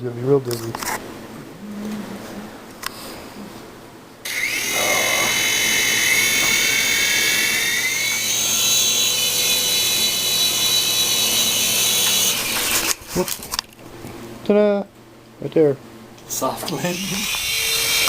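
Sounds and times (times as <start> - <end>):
toy helicopter motor whine: 4.3 - 13.0, 16.8 - 18.0.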